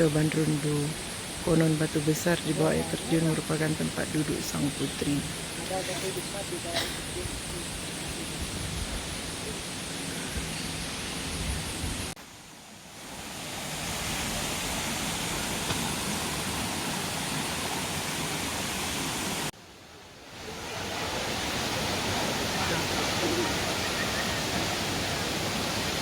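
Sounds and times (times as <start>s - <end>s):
waterfall rushing: 12.8s - 19.5s, 20.1s - 26.0s.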